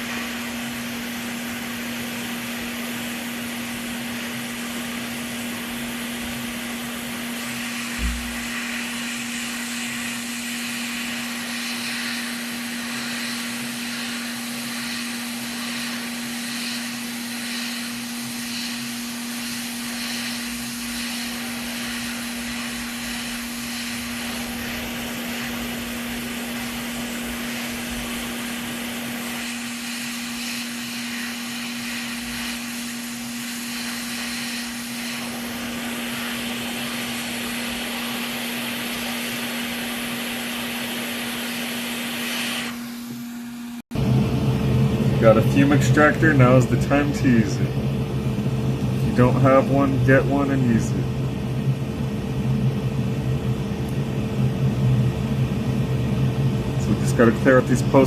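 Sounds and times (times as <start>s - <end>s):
hot air station blowing: 0.0s - 58.0s
dull thump: 8.0s - 8.4s
constant low hum: 44.0s - 58.0s.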